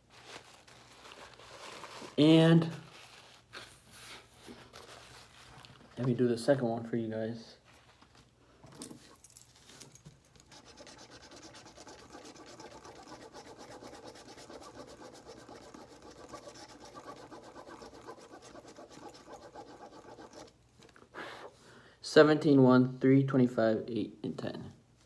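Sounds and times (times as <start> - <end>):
scratching lottery ticket: 10.4 - 20.6.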